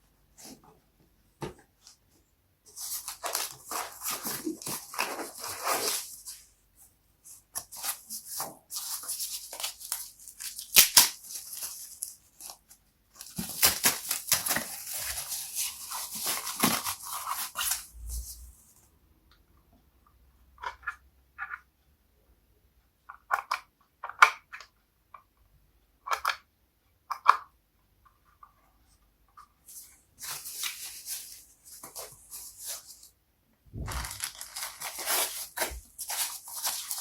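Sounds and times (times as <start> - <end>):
plastic and cardboard crinkling: 2.7 - 6.6, 7.2 - 18.5, 29.7 - 33.1, 33.7 - 37.0
low thud: 33.7 - 34.2.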